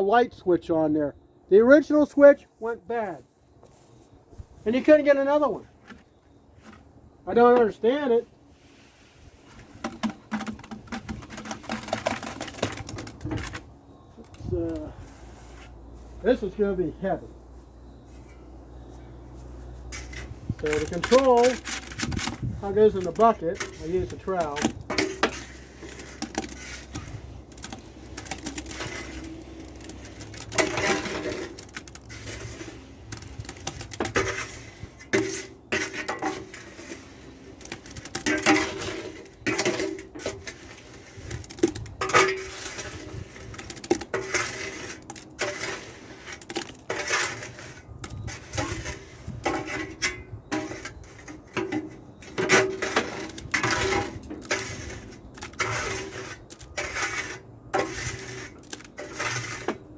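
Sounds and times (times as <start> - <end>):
trowel scraping and clanking: 8.8 - 16.4, 19.8 - 59.9.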